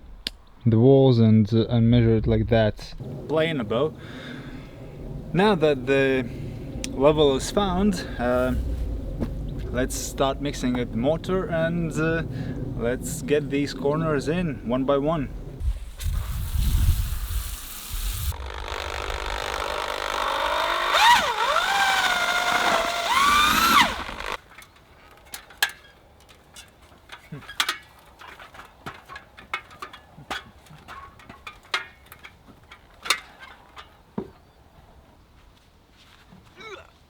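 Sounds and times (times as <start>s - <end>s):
power mixer motor running: 17.5s - 24.4s
tools clicking and knocking: 24.4s - 34.3s.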